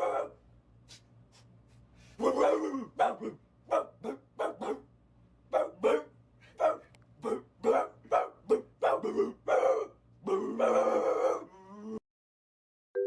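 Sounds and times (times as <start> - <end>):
dog barking: 0.0 - 0.4, 2.2 - 4.9, 5.5 - 9.9.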